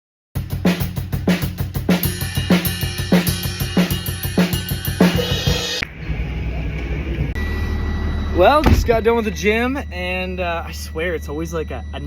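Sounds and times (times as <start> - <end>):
drum kit playing steady beat: 0.4 - 5.9
low steady rumble: 5.8 - 12.0.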